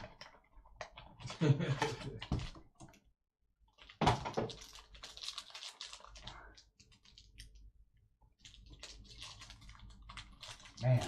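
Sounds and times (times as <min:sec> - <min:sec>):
plastic packaging crinkling: 0:03.7 - 0:07.6, 0:08.4 - 0:11.0.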